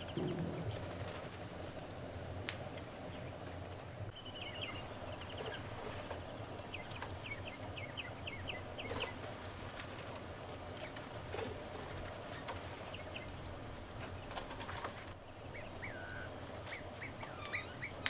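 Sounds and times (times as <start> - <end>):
small bird calling: 0.0 - 1.0, 14.0 - 18.0
low background hum: 0.0 - 18.0.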